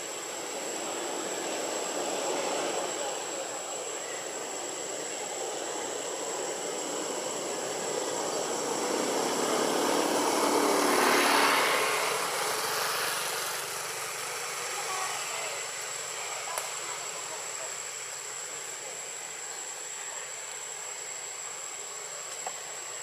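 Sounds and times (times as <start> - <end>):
passing vehicle engine: 7.3 - 14.9.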